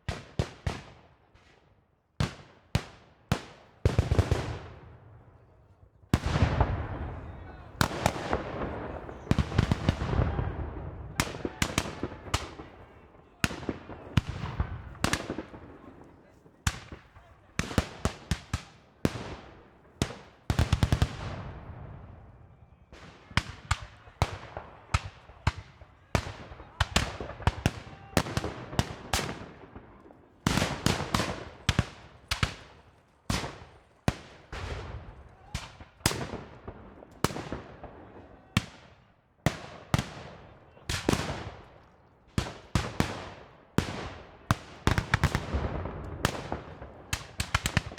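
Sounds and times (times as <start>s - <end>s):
echoing gunshots: 6.1s - 22.2s, 42.4s - 47.9s.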